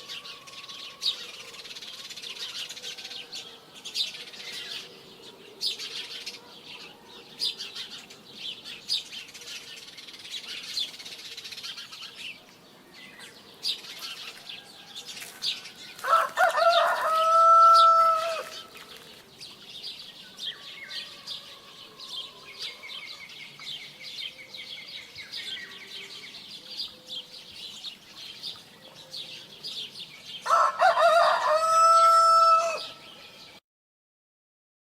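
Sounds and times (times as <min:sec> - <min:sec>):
small birds chirping: 0:00.0 - 0:31.3
rooster crowing: 0:15.7 - 0:18.7, 0:20.5 - 0:22.9, 0:30.4 - 0:33.0.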